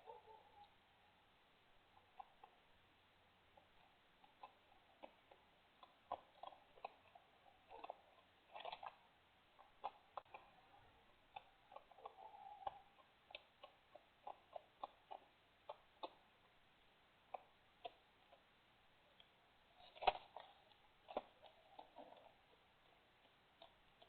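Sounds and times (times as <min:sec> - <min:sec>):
animals chewing food: 0:00.0 - 0:24.0.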